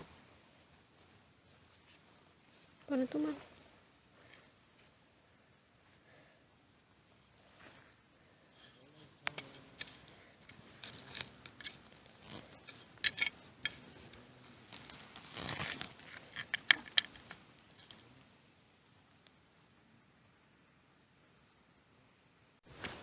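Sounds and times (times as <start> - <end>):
rustling: 5.8 - 18.4, 22.7 - 23.0.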